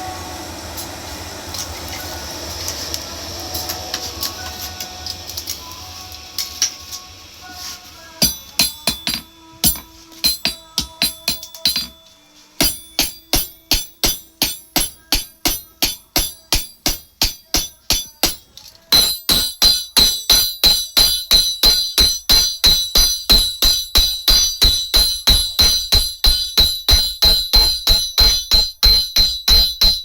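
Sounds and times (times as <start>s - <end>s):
hammer ringing on anvil: 8.2s - 30.0s.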